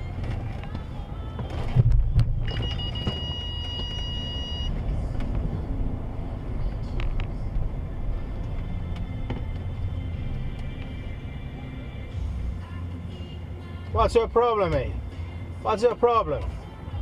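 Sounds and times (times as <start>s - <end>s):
car engine and road rumble: 0.0s - 17.0s
heavy thumps: 0.2s - 4.0s.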